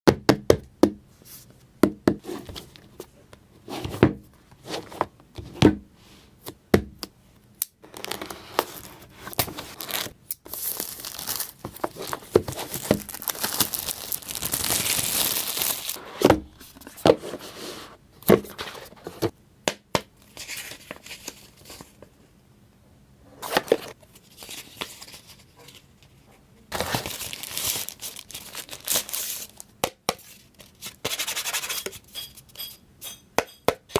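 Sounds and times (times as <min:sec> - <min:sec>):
packaging tearing and crinkling: 0:07.8 - 0:16.0, 0:26.7 - 0:29.7.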